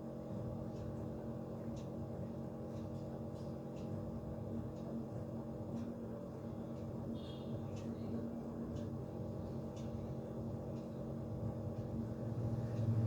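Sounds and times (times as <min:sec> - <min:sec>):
low hum of held tones: 0:00.0 - 0:13.0.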